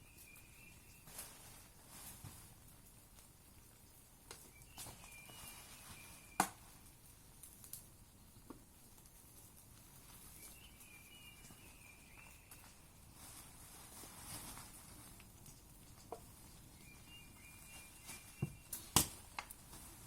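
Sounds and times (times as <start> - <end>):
bird high whistles: 4.5 - 6.4, 10.4 - 12.6, 16.8 - 18.9.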